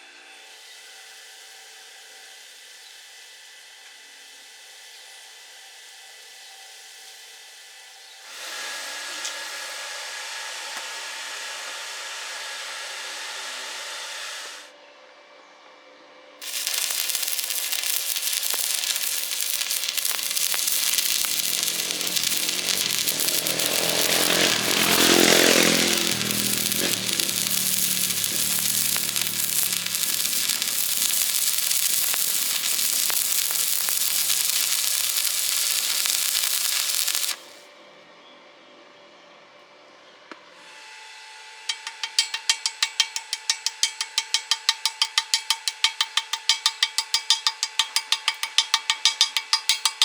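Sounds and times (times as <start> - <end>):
welding arc crackling: 16.4 - 37.6, 41.7 - 50.0
steady hiss: 16.4 - 37.7, 41.7 - 50.0.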